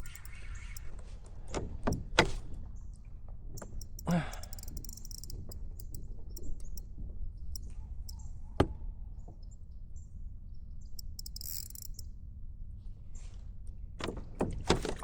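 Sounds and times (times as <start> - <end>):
faint ticking: 0.0 - 0.9, 3.6 - 6.9.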